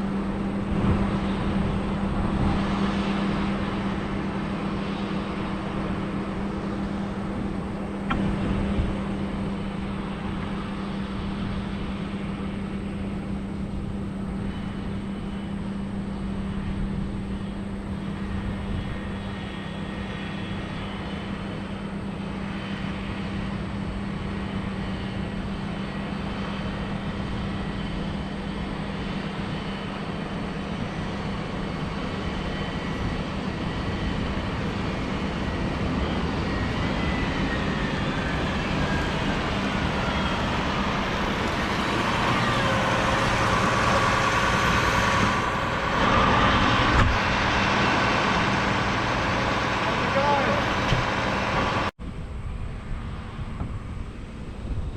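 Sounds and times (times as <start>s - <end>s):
diesel engine droning under load: 0.0s - 54.9s
faint high whine: 0.0s - 54.9s.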